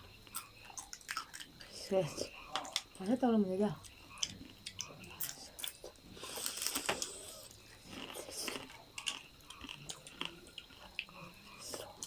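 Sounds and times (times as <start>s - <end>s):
close chewing and biting food: 0.2s - 3.0s, 3.8s - 12.0s.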